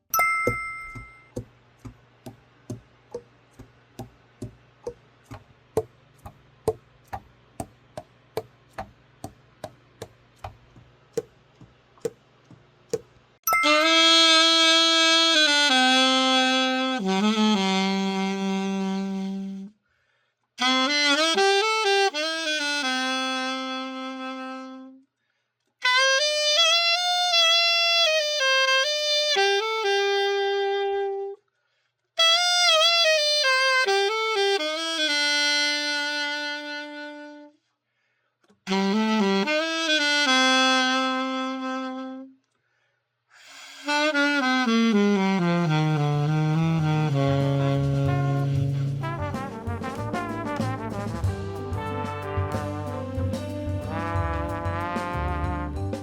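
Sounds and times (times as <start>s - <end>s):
alto saxophone melody: 13.5s - 19.8s, 20.6s - 25.1s, 25.8s - 31.4s, 32.2s - 37.6s, 38.6s - 42.6s, 43.7s - 56.0s.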